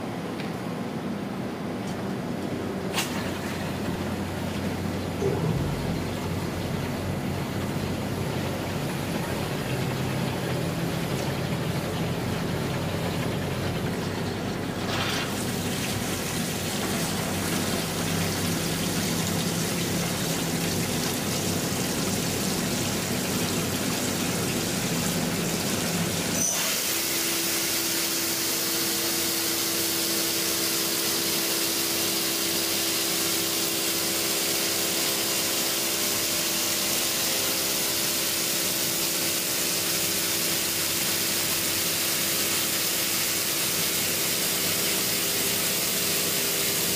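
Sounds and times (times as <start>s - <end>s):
steady hum: 0.0s - 19.3s
coolant spray hiss: 14.8s - 46.9s.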